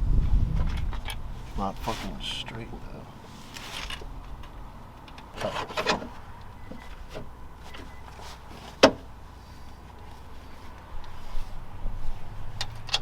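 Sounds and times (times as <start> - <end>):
metal tools scraping and knocking: 5.2 - 8.0.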